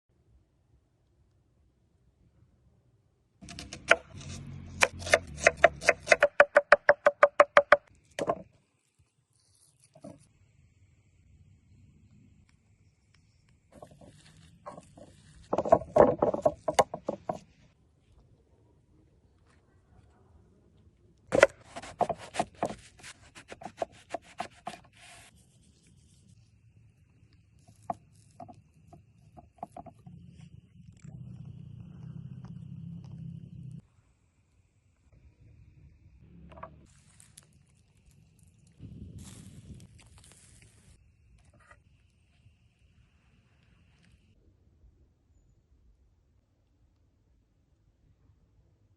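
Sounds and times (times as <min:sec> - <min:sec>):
knife chopping on wooden board: 0:03.4 - 0:08.4, 0:21.4 - 0:25.0.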